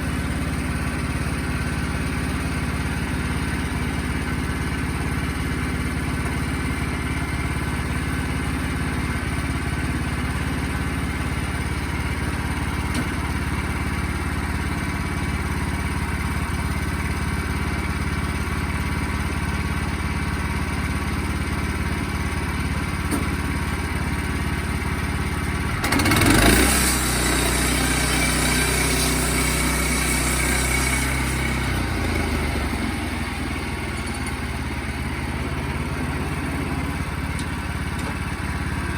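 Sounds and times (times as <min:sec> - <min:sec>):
sawmill engine running: 0:00.0 - 0:38.9
hissing rasping saw noise: 0:25.9 - 0:38.9.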